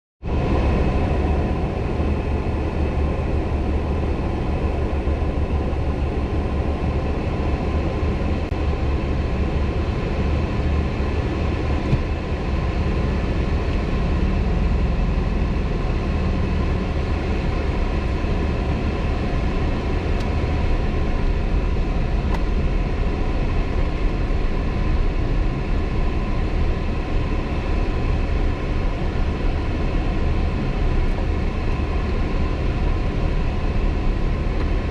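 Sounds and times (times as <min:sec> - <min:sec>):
vehicle engine rumble: 0:00.2 - 0:34.9.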